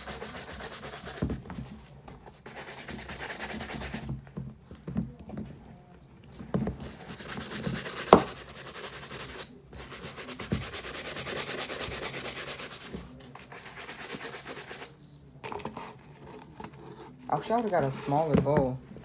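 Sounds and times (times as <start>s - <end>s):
brush scrubbing suede: 0.0s - 1.2s, 6.8s - 14.9s.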